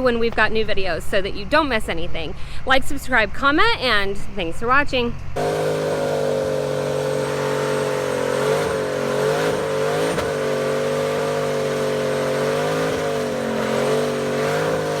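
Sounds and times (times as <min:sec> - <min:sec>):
vehicle engine running: 0:05.4 - 0:15.0.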